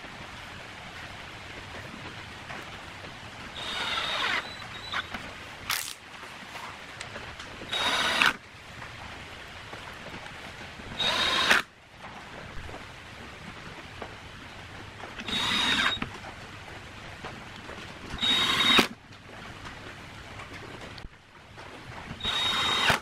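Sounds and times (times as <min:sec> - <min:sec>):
power drill whining: 0:03.6 - 0:06.0, 0:07.7 - 0:08.4, 0:11.0 - 0:11.6, 0:15.2 - 0:16.0, 0:18.2 - 0:18.9, 0:22.2 - 0:23.0.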